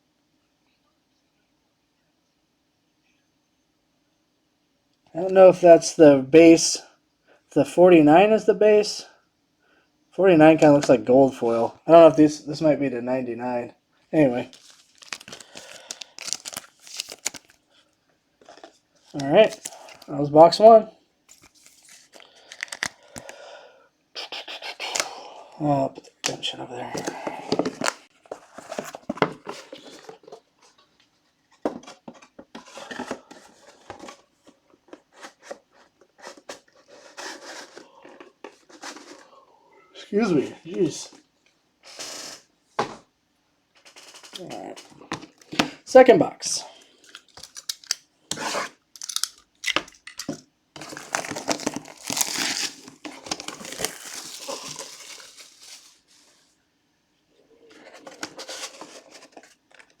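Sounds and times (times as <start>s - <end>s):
plastic wrapping crinkling: 14.3s - 17.8s, 18.5s - 20.1s, 21.3s - 23.3s, 49.0s - 56.4s
cards and holders clicking and rustling: 14.5s - 17.6s, 18.4s - 20.1s, 21.3s - 23.4s, 26.0s - 30.8s, 31.6s - 39.3s, 43.8s - 45.7s, 47.0s - 55.6s, 57.7s - 60.0s.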